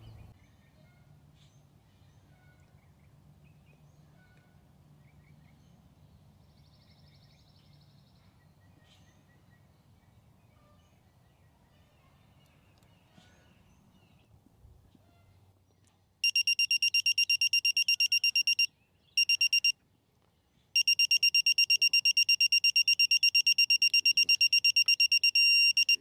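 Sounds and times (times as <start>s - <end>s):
rapid high-pitched beeping: 16.2s - 19.7s, 20.8s - 26.0s.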